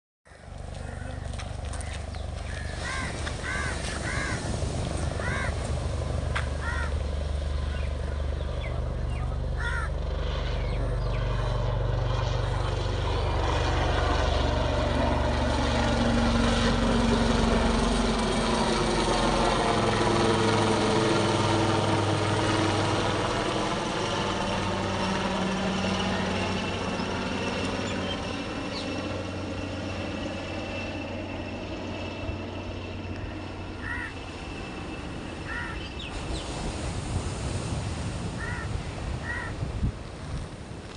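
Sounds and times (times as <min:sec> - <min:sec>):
crows cawing: 0:00.3 - 0:04.5, 0:05.2 - 0:05.7, 0:06.3 - 0:07.1, 0:09.6 - 0:10.0, 0:33.2 - 0:34.2, 0:35.4 - 0:36.0, 0:38.4 - 0:39.6
helicopter flying past: 0:00.3 - 0:40.9.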